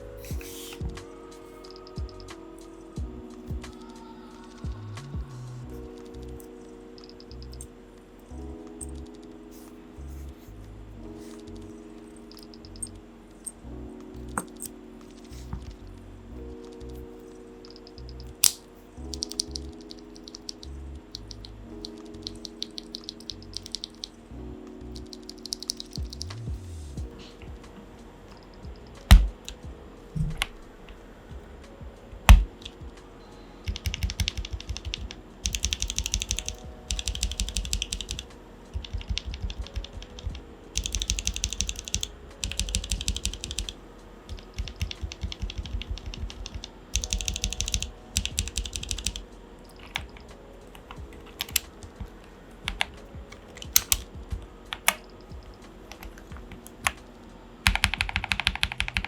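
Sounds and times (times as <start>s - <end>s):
mechanical keyboard typing: 17.6s - 24.2s, 24.9s - 26.4s, 28.6s - 29.6s, 32.2s - 32.8s, 33.7s - 43.7s, 44.3s - 50.2s, 50.8s - 51.7s, 52.7s - 54.1s, 54.7s - 57.0s, 57.6s - 59.0s.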